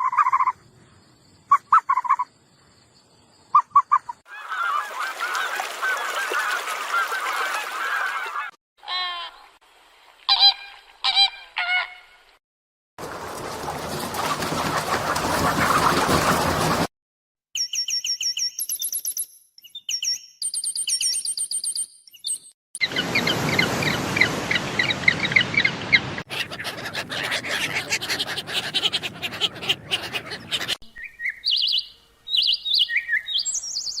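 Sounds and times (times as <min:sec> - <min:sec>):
birds chirping and calling: 0:19.6 - 0:34.0.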